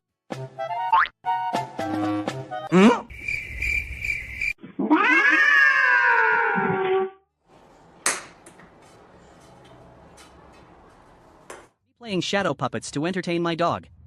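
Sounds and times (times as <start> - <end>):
pet's long drawn-out cry: 4.9 - 7.1.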